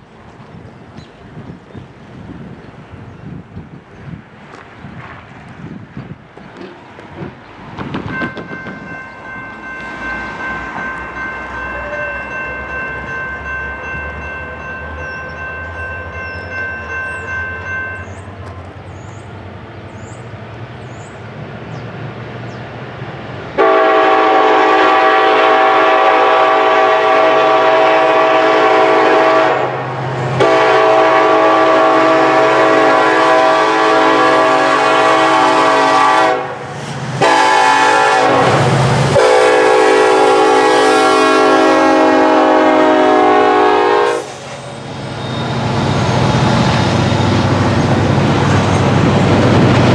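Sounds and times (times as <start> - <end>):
train rumbling: 0.0 - 49.9
train air horn: 23.6 - 46.1.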